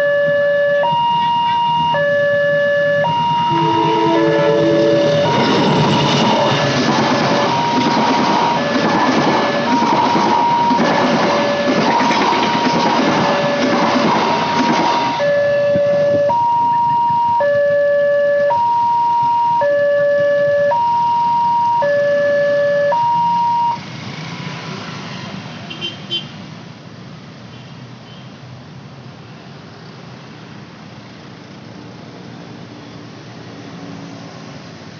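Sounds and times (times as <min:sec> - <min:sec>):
two-tone crossing siren: 0:00.0 - 0:23.8
passing train: 0:00.7 - 0:27.4, 0:28.8 - 0:34.9.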